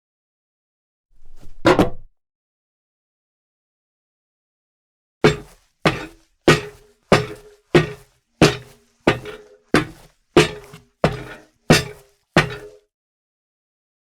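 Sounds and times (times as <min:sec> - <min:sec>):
sneaker footsteps on steel plate: 0:05.3 - 0:12.8.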